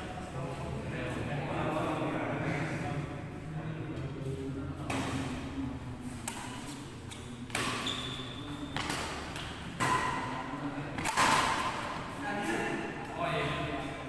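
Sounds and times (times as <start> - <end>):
rackets hitting shuttlecock: 6.2 - 8.1, 8.8 - 12.0.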